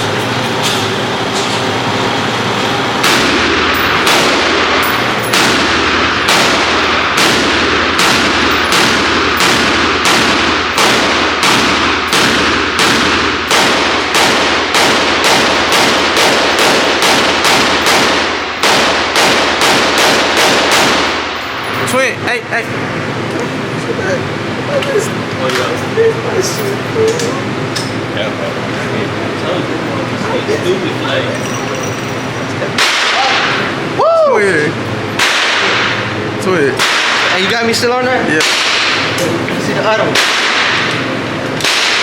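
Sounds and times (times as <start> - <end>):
gunshots with echo: 3.0 - 21.5, 32.7 - 33.7, 35.2 - 36.1, 36.8 - 37.4, 38.4 - 39.2, 40.1 - 40.9, 41.6 - 42.0.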